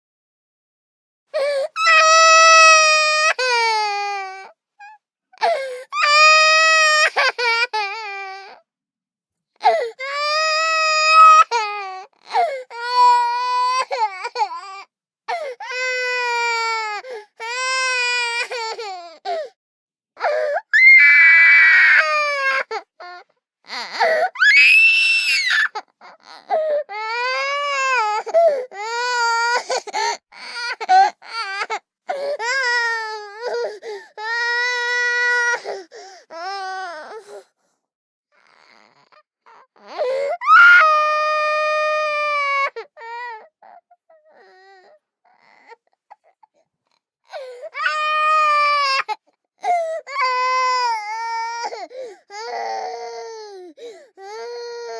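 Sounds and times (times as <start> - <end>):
toddler screaming: 20.6 - 22.7, 24.3 - 25.8, 40.4 - 41.8.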